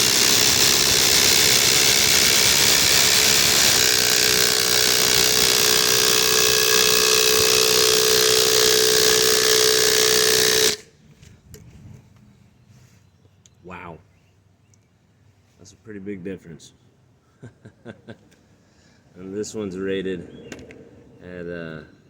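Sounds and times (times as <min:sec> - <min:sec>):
impact drivers hammering screws: 0:00.0 - 0:10.8.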